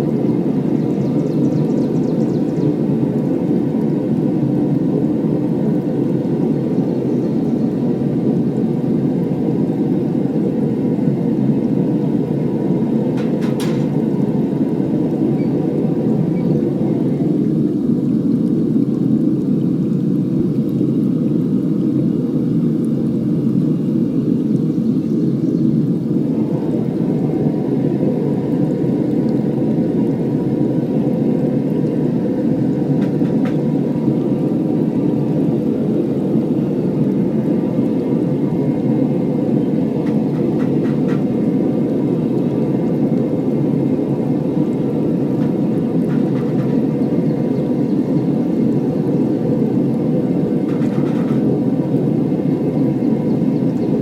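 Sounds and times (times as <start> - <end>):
furnace burner rushing: 7.6 - 18.4, 26.0 - 54.0.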